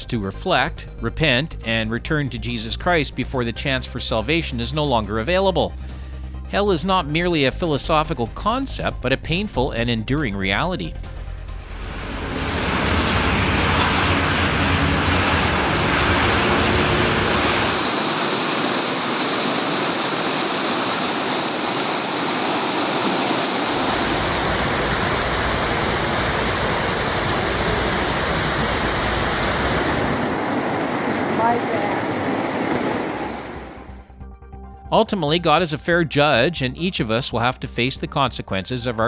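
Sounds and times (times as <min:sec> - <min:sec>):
deep rumble: 0:07.0 - 0:19.4, 0:23.5 - 0:34.5
storm water rushing: 0:11.1 - 0:34.0.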